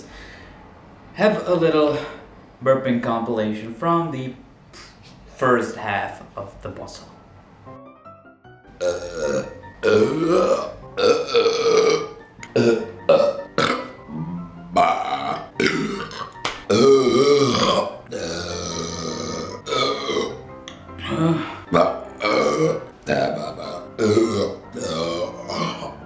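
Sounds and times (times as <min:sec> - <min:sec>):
man burping: 0:08.7 - 0:26.0.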